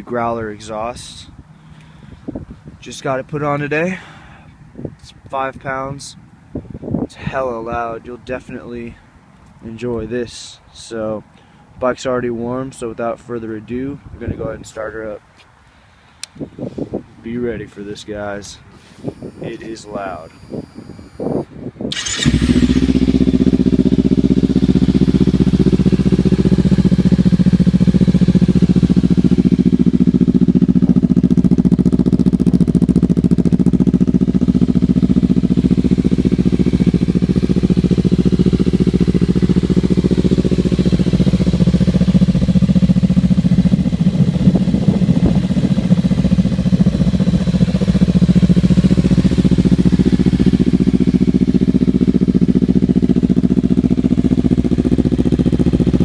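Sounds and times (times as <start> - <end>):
motorcycle engine starting and idling: 18.8 - 56.0.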